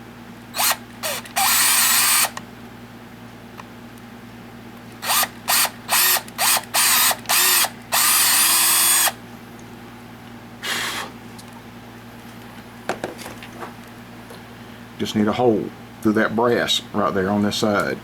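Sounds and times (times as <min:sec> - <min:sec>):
power drill whining: 0:00.6 - 0:02.4, 0:05.0 - 0:09.2.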